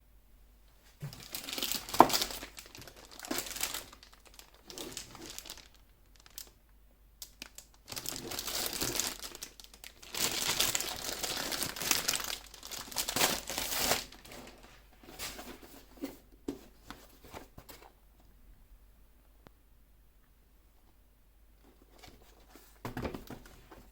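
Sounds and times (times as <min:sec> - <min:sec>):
packaging crinkling and rustling: 0:01.0 - 0:06.6, 0:07.2 - 0:17.9.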